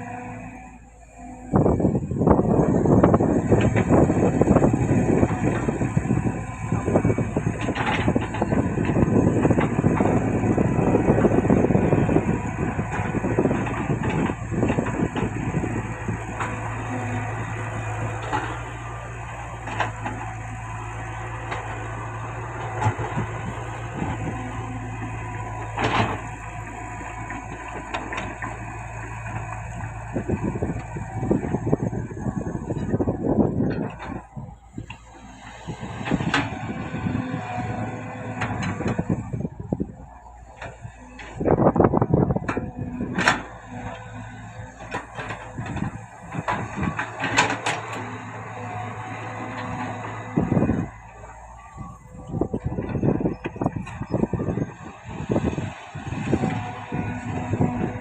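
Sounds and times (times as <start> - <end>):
heavy diesel machinery rumbling: 0.0 - 58.0.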